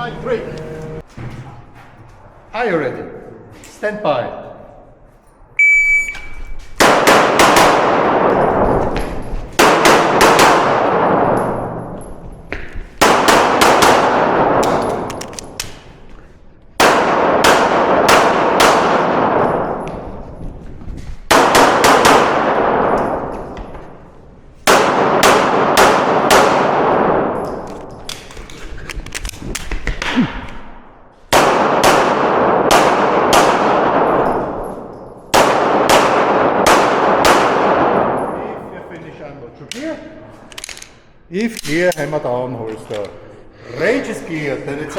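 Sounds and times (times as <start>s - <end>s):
handgun firing rapid shots: 6.8s - 8.4s, 9.6s - 11.3s, 13.0s - 15.8s, 16.8s - 19.5s, 21.3s - 23.0s, 24.6s - 27.4s, 31.3s - 34.2s, 35.3s - 38.1s.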